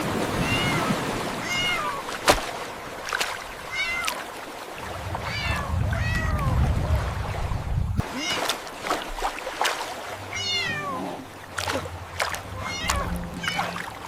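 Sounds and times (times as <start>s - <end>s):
kittens meowing: 12.6s - 13.8s.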